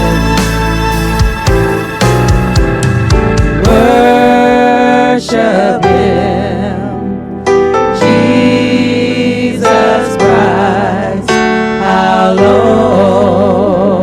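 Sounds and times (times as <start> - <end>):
bass: 0.0 - 14.0
keyboard chords: 0.0 - 14.0
singers with vibrato: 3.6 - 7.3, 7.9 - 14.0.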